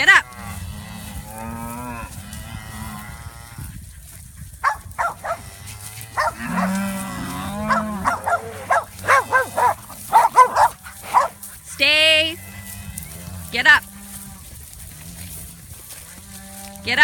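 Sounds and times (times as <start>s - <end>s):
cows mooing: 0.0s - 3.6s, 4.6s - 17.0s
short sharp cattle calls: 4.6s - 5.4s, 6.2s - 6.8s, 7.5s - 11.4s.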